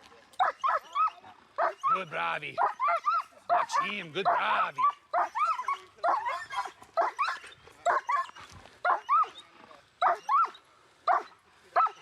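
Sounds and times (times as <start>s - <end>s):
dog barking loudly: 2.6s - 8.3s, 8.9s - 9.3s, 10.0s - 10.5s, 11.1s - 12.0s.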